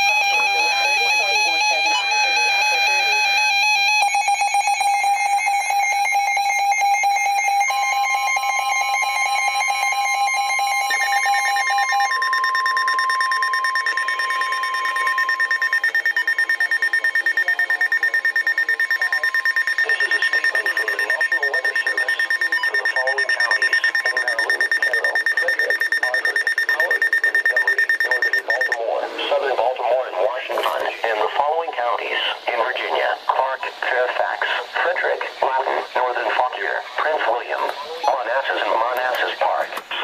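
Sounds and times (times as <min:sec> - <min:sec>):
steady warning tone: 0:00.0 - 0:28.8.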